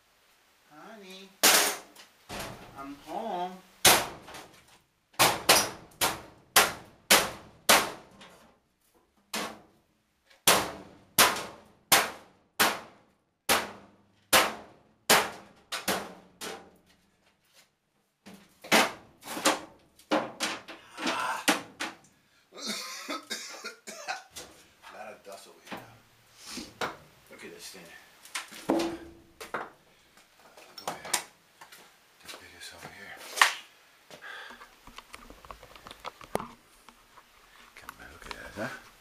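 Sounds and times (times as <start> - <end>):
hammer clanging on sheet metal: 1.4 - 2.6, 5.2 - 8.1.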